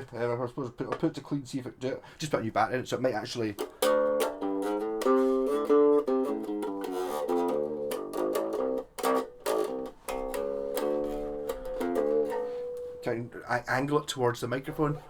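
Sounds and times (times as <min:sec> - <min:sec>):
electric bass plucked notes: 0:03.6 - 0:13.4.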